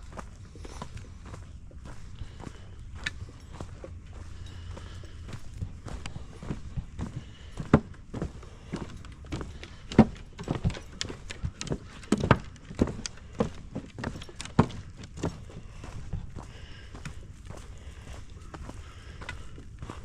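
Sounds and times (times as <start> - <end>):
footsteps on woodland trail: 0.0 - 20.0.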